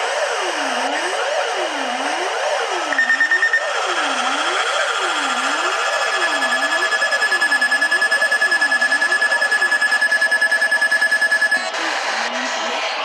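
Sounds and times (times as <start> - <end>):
pulsing emergency alert tone: 2.8 - 12.6.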